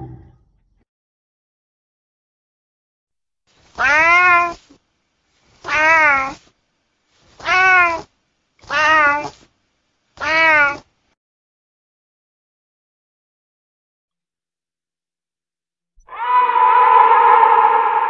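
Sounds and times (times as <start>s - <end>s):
cat meowing: 3.8s - 4.6s, 5.6s - 6.4s, 7.4s - 9.4s, 10.2s - 10.9s, 16.0s - 18.0s.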